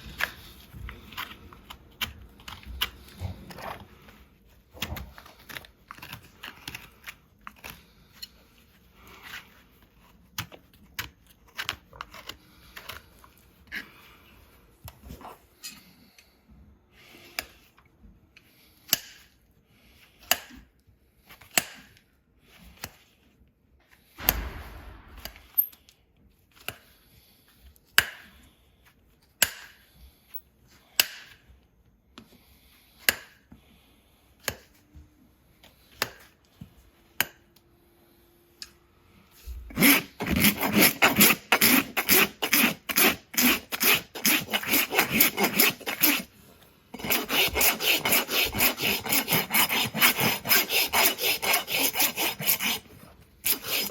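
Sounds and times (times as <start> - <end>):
hoof rasp filing: 39.7 - 46.3, 46.9 - 53.9
hoof trimming strokes: 39.7 - 46.3, 47.0 - 53.9.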